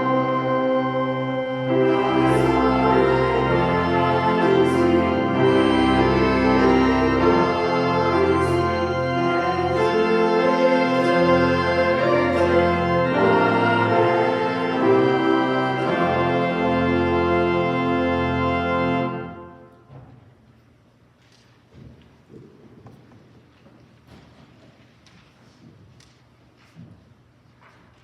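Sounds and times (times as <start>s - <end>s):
organ playing chords: 0.0s - 19.9s.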